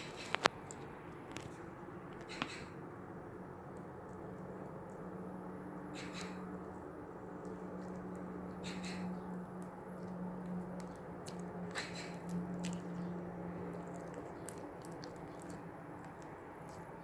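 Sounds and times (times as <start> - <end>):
slime squelching by hand: 5.8 - 17.0.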